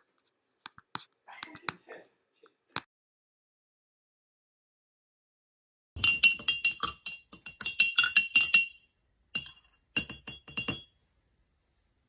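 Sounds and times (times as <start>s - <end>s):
spoon clinking in a glass: 6.0s - 10.9s.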